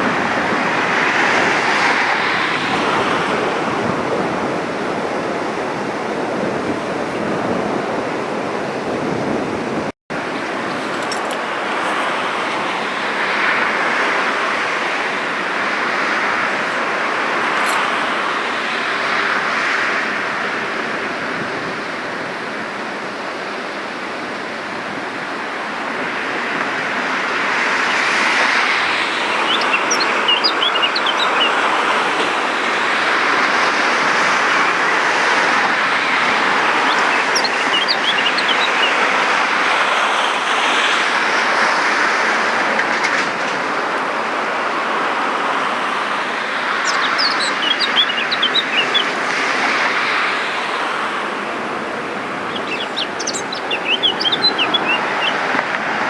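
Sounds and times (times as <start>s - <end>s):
rushing outdoor noise: 0.0s - 56.0s
high bird chirps: 36.7s - 41.2s.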